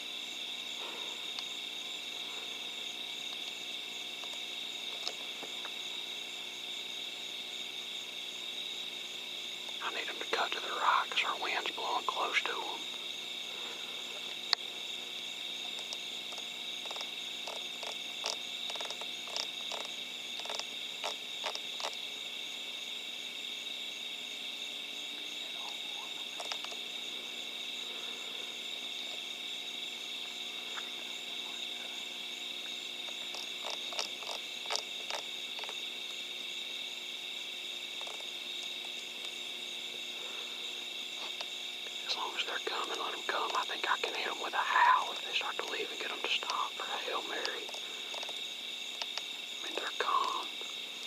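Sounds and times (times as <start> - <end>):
frogs calling: 0.0 - 51.0.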